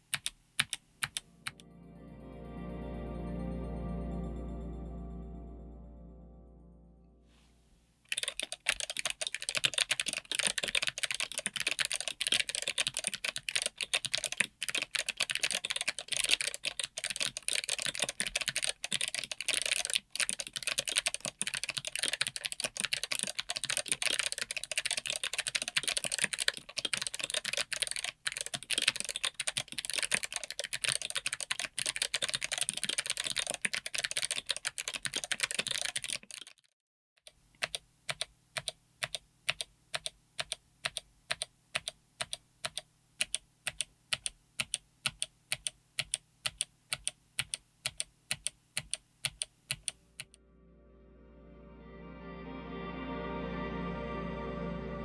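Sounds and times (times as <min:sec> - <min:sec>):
mechanical keyboard clicks: 0:08.1 - 0:36.6.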